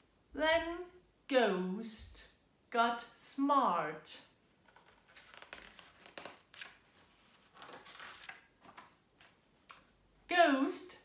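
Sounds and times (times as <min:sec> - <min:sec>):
paper pages rustling: 0:04.6 - 0:09.9.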